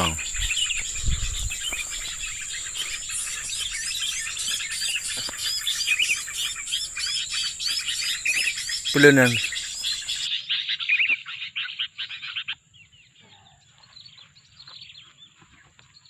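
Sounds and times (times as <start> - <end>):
high insect drone: 0.0 - 10.3
small birds chirping: 0.0 - 16.0.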